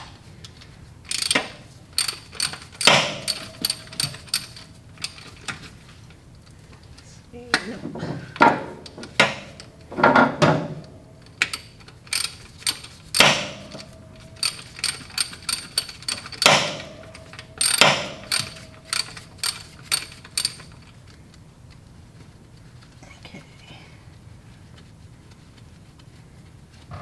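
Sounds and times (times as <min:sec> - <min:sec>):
sharp metal clanks: 0:01.1 - 0:05.5, 0:11.4 - 0:20.8
ratchet clicking: 0:01.1 - 0:05.6, 0:11.4 - 0:20.9.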